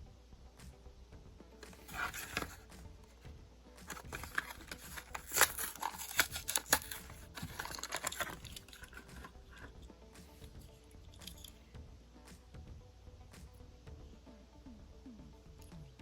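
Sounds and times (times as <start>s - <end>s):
packaging crinkling and tearing: 1.7s - 2.6s, 3.9s - 9.6s.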